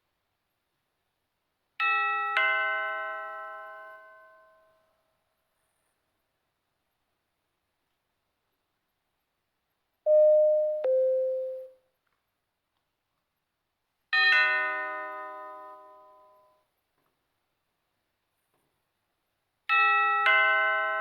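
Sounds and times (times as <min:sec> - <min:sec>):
bright chime ringing: 0:10.1 - 0:11.7
two-note doorbell ding-dong: 0:10.1 - 0:11.8.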